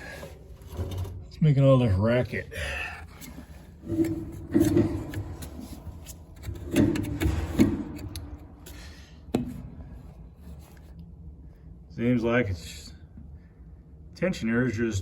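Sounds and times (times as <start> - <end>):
dryer parts scraping and knocking: 0.0 - 2.0, 3.1 - 10.9.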